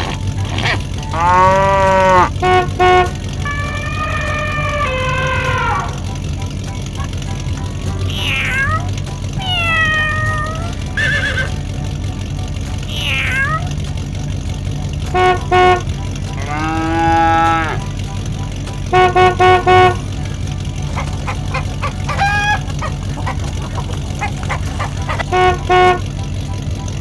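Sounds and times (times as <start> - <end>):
cow mooing: 0.0 - 6.1, 7.7 - 11.6, 16.4 - 18.0
low engine rumble: 0.0 - 27.0
truck horn tooting: 0.0 - 27.0.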